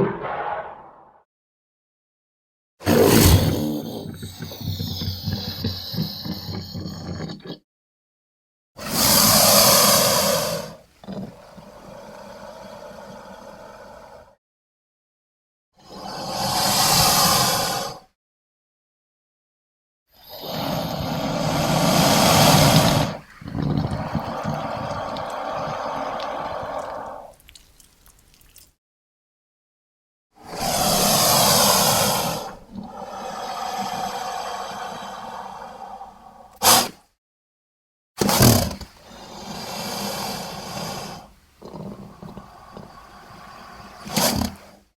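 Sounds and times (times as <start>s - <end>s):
loud breathy creature call: 20.2s - 27.4s, 30.4s - 36.6s.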